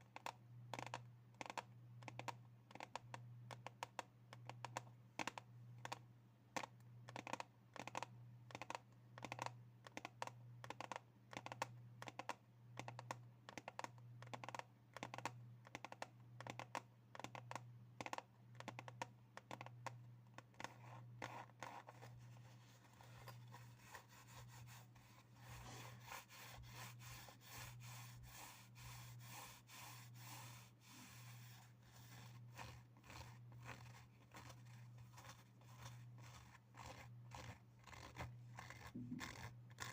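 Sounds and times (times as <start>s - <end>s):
fingers tapping on objects: 0.1s - 6.0s, 6.6s - 22.1s, 32.6s - 39.9s
scratching: 20.6s - 39.9s.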